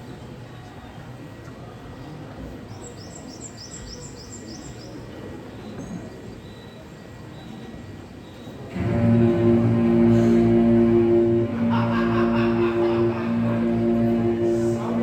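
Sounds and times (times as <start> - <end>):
loud music: 8.7 - 15.0
low rumbling background: 8.7 - 15.0.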